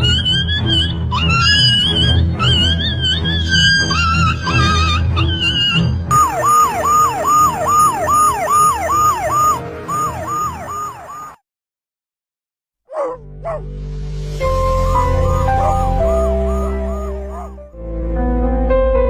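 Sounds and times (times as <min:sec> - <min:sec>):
background music: 0:00.0 - 0:11.3, 0:13.1 - 0:19.0
siren yelping: 0:00.6 - 0:11.4, 0:12.9 - 0:13.6, 0:14.4 - 0:17.6.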